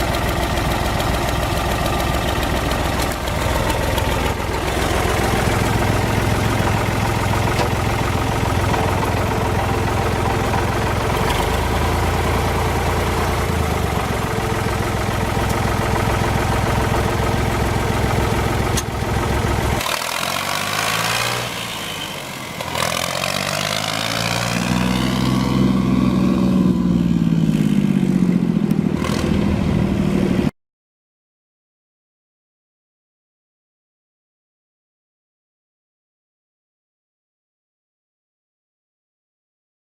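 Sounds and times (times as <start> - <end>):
tractor diesel engine revving: 0.0 - 30.4.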